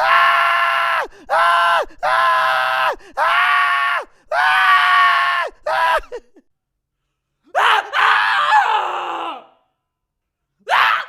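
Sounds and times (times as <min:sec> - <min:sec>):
man screaming: 0:00.0 - 0:06.3, 0:07.5 - 0:09.6, 0:10.7 - 0:11.0.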